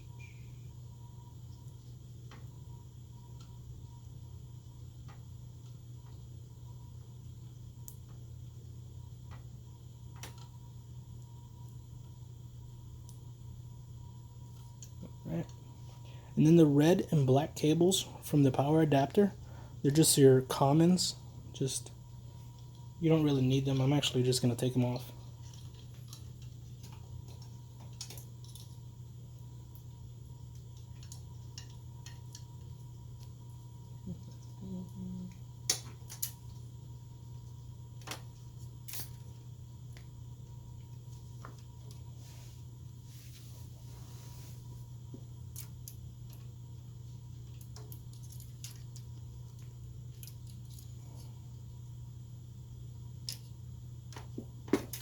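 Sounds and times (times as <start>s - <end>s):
steady low hum: 0.0s - 55.0s
small clicks of handling wires: 3.2s - 3.6s, 5.0s - 6.2s, 7.4s - 8.6s, 9.2s - 9.5s, 10.1s - 10.6s, 14.4s - 16.1s, 25.0s - 34.6s, 35.3s - 36.8s, 37.4s - 42.2s, 45.0s - 51.4s, 53.2s - 55.0s
small clicks of wire terminals: 30.5s - 33.3s, 47.4s - 51.0s.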